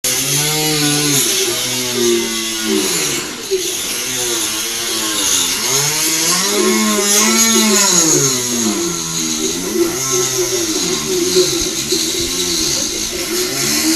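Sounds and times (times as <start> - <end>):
man imitating engine with voice: 5.8 - 13.9.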